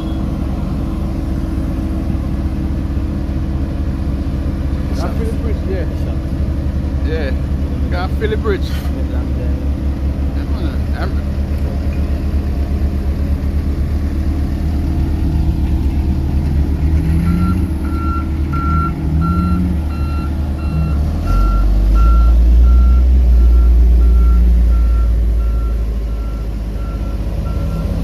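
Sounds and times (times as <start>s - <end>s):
heavy diesel machinery rumbling: 0.0s - 28.0s
reversing alarm beeping: 17.3s - 27.9s.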